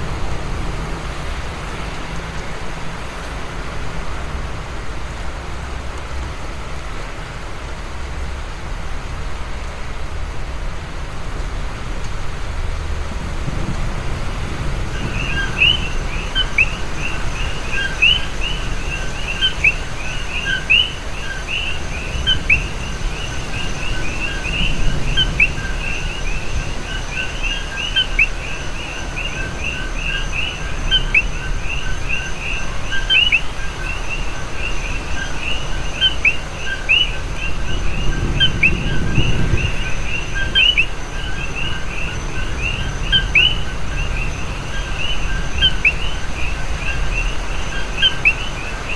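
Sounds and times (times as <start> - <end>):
small birds chirping: 14.9 - 48.9.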